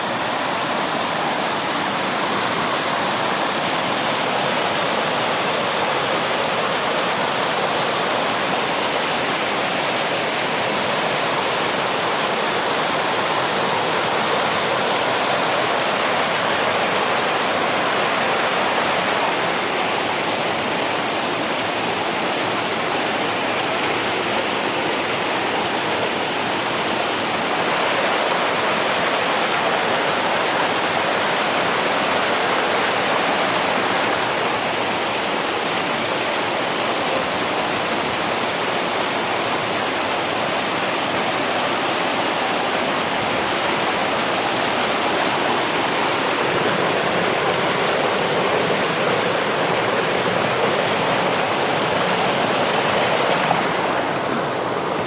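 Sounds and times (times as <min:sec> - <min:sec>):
waterfall pouring: 0:00.0 - 0:55.0.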